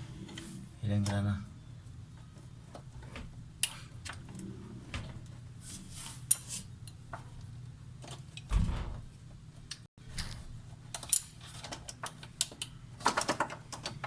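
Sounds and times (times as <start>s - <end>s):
heavy thump: 8.5s - 9.1s.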